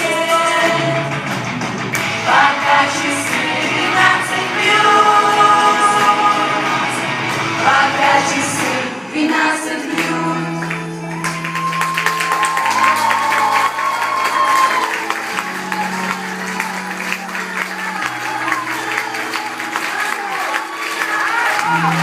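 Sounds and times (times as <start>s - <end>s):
woman singing: 0.0s - 1.1s, 2.3s - 7.0s, 7.6s - 11.2s
pop backing track: 0.0s - 22.0s.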